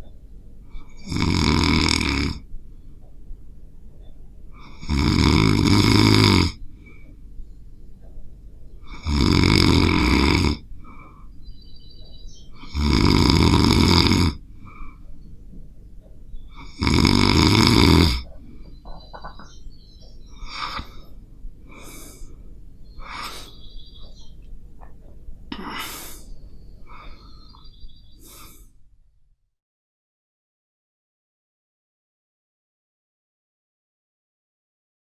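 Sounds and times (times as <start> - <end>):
person snoring heavily: 0.7 - 2.4, 4.6 - 6.6, 8.8 - 10.6, 12.5 - 14.8, 16.5 - 18.3, 20.3 - 21.0, 23.0 - 23.6.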